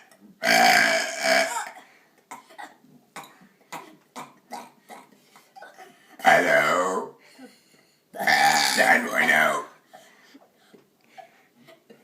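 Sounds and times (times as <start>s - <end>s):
loud forced burp: 0.4s - 1.8s, 8.2s - 9.7s.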